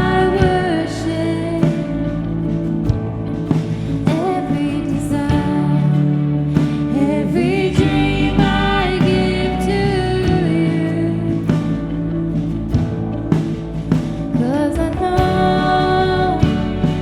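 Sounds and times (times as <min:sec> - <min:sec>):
lead singer singing: 0:00.0 - 0:02.3, 0:04.0 - 0:12.0, 0:14.4 - 0:17.0
live band music: 0:00.0 - 0:17.0.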